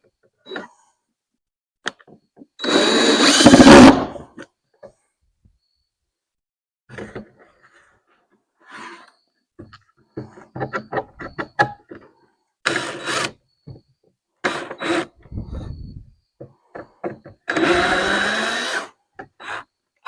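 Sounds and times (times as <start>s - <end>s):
loud noisy bursts: 2.8s - 4.2s.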